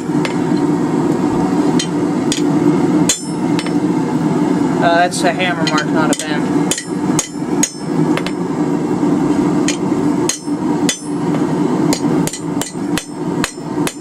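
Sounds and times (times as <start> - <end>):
hammer ringing on anvil: 3.1 - 3.8, 5.6 - 8.4, 9.7 - 11.2, 12.0 - 14.0.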